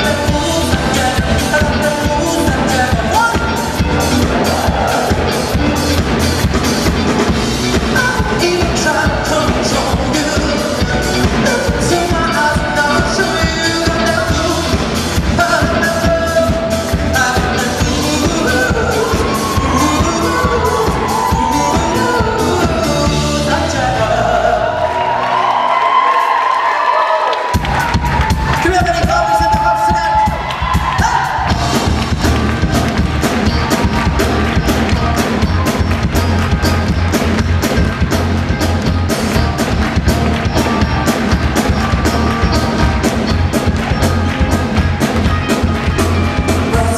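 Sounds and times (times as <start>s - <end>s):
man singing: 0.0s - 6.0s, 7.6s - 24.9s, 45.2s - 46.9s
pop band dance beat: 0.0s - 24.6s, 27.4s - 46.9s
audience cheering: 2.3s - 9.1s, 17.4s - 46.9s.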